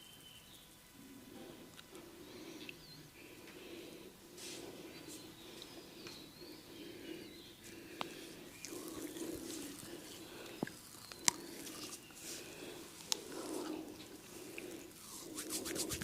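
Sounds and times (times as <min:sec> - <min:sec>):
oiled hands rubbing skin: 0:08.0 - 0:16.0.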